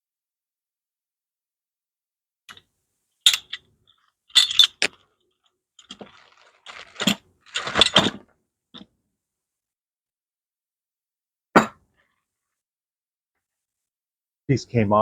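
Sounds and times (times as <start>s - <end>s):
small metal parts clinking: 3.2s - 8.2s.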